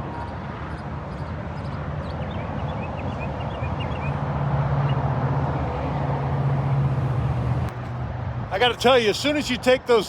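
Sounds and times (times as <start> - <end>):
small birds chirping: 0.1 - 4.2.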